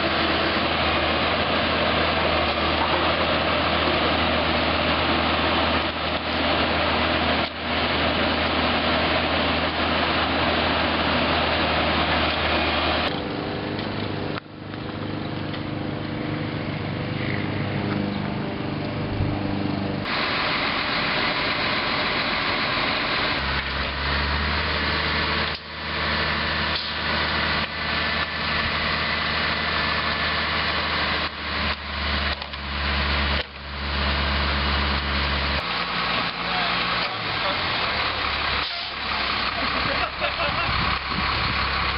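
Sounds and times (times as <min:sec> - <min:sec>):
heavy machinery engine running: 0:00.0 - 0:41.9.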